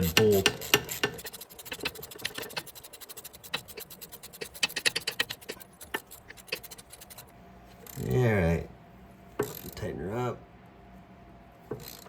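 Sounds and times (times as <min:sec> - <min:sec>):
bolt clicking and scraping: 0:00.0 - 0:07.3.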